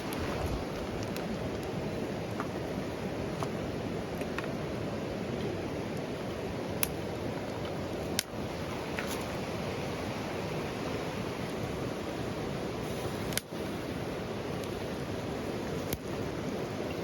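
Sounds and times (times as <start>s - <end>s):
campfire burning: 0.0s - 17.0s
fire crackling pops: 5.9s - 8.4s, 13.0s - 14.9s, 15.5s - 16.5s.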